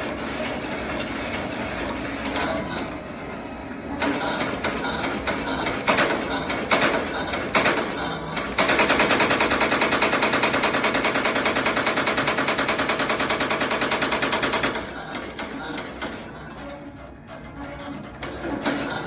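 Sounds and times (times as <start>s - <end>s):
knitting machine clattering: 4.0s - 19.0s.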